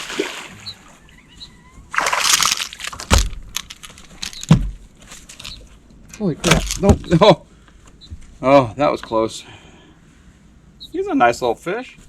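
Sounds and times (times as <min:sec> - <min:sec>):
loud splash on water: 0:00.0 - 0:00.6.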